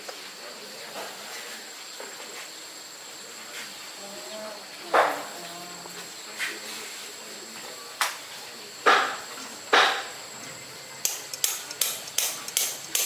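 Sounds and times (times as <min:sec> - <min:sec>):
hammer striking: 0:11.0 - 0:13.0.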